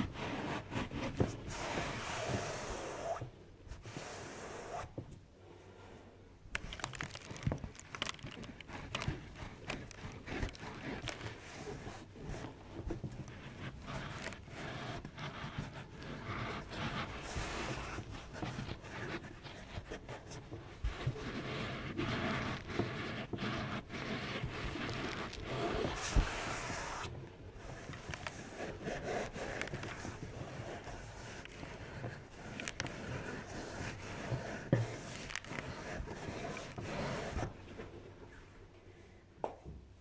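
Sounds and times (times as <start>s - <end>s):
small clicks and crackles: 6.5s - 11.8s, 27.8s - 34.1s, 34.7s - 36.8s
close rubbing and scraping: 6.6s - 38.5s.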